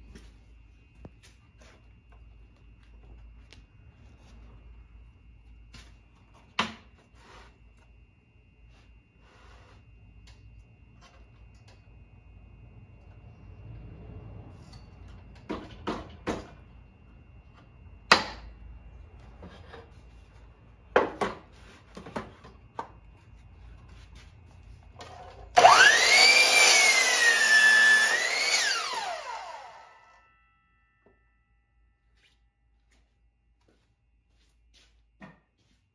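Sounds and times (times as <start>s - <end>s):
power saw whining: 25.5s - 30.2s.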